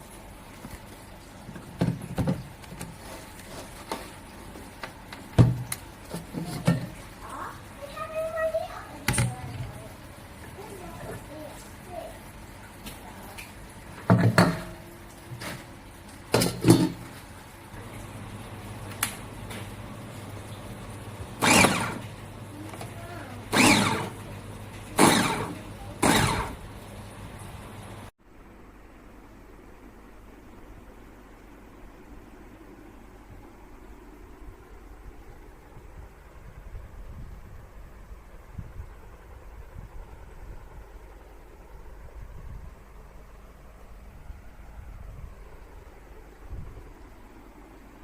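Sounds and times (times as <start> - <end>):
food chopper parts knocking: 21.2 - 26.6.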